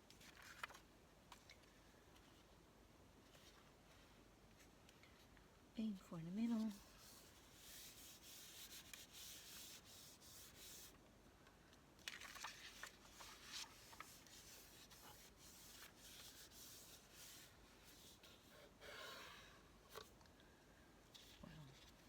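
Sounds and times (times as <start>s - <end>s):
paper crinkles: 12.1s - 16.9s
paper sheets rubbing and sliding: 12.5s - 18.5s.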